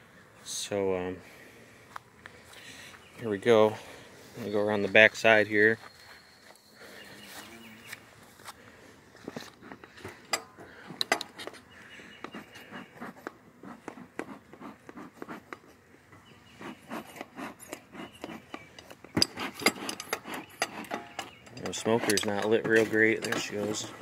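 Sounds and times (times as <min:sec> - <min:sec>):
metal tools clinking and scraping: 0:17.0 - 0:24.0.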